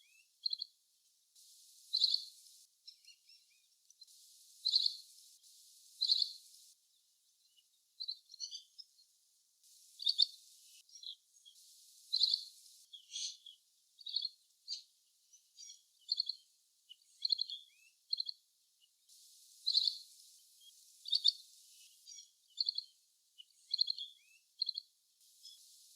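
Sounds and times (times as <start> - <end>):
bird high trilled calls: 1.6 - 5.1, 5.9 - 6.5, 8.0 - 8.8, 9.8 - 14.9, 15.6 - 16.4, 17.2 - 18.3, 19.5 - 24.8.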